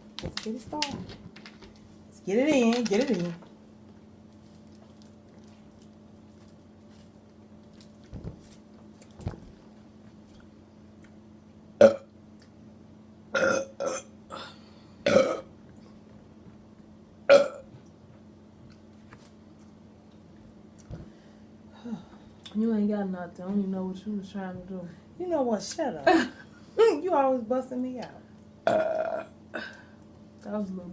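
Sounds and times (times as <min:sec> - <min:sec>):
people burping: 0:11.8 - 0:12.1, 0:13.4 - 0:15.5, 0:17.3 - 0:17.6, 0:28.6 - 0:29.9.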